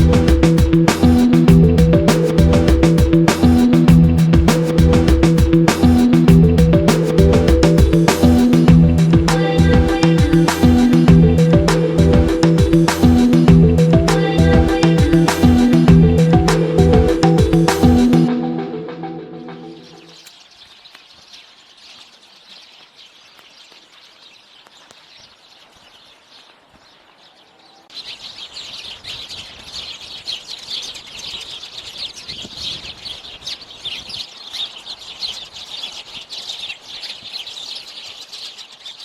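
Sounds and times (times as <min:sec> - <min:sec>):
small birds chirping: 0:19.7 - 0:39.0.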